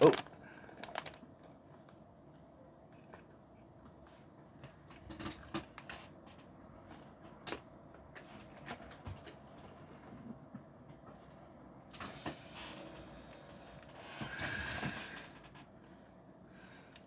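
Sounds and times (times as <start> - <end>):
plastic bag rustling and crackling: 0.0 - 1.2.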